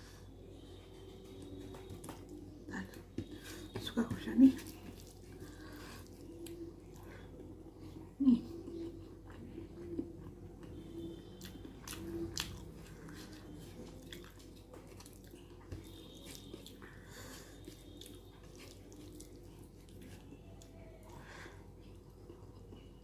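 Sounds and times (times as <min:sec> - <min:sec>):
chewing and biting: 0:04.6 - 0:07.1, 0:08.6 - 0:20.8.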